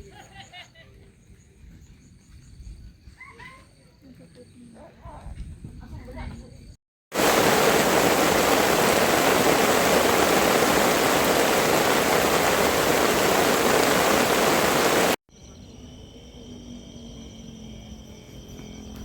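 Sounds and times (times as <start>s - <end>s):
rush of running water: 7.1s - 15.2s.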